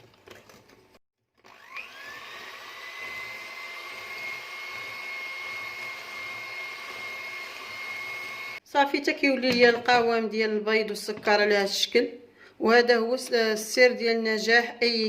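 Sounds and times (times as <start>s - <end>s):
electric hand mixer whining: 1.3s - 8.6s.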